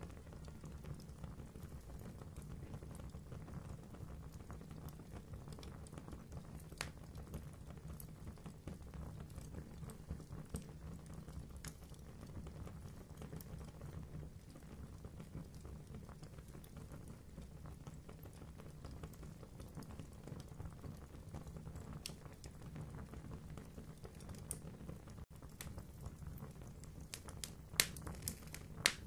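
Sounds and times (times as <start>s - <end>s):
wood fire crackling: 0.0s - 29.0s
sharp fire pops: 25.3s - 29.0s.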